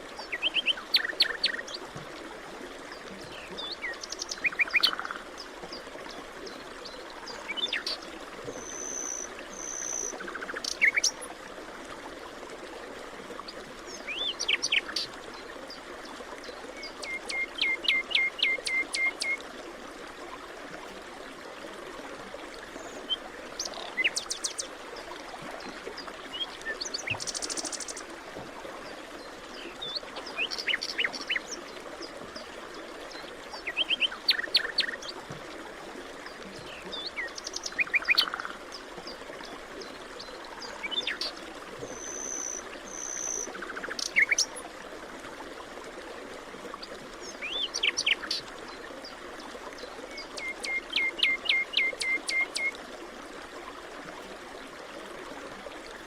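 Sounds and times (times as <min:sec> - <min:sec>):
forest birds chirping: 0:00.2 - 0:01.8, 0:03.2 - 0:05.8, 0:36.3 - 0:39.2, 0:47.2 - 0:48.5, 0:49.8 - 0:52.7.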